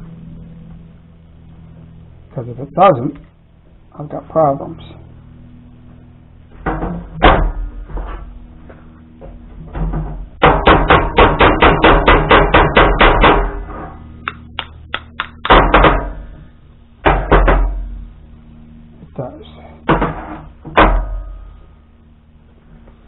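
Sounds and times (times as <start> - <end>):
rapid hammering on metal: 10.4 - 13.7, 14.3 - 16.3, 17.0 - 18.0.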